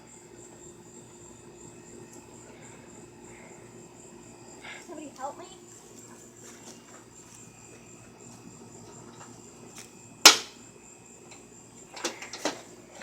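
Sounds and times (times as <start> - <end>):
crickets chirring: 0.0 - 13.0
tool striking metal: 10.3 - 10.6.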